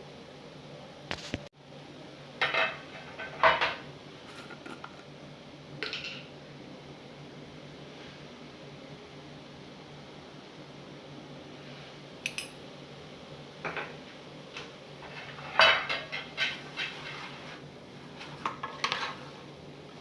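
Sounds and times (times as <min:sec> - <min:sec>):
pots and utensils clinking: 0:02.4 - 0:05.0, 0:12.2 - 0:12.6, 0:15.0 - 0:17.2.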